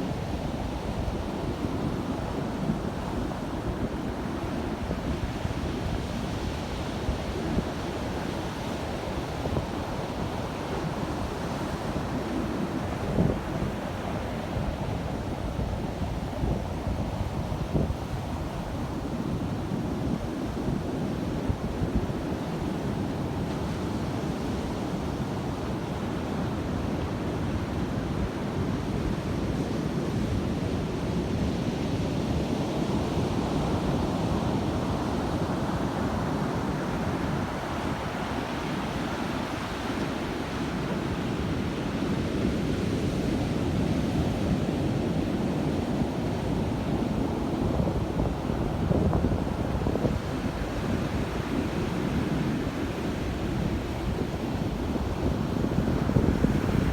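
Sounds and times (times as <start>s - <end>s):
wind buffeting microphone: 46.2s - 56.9s.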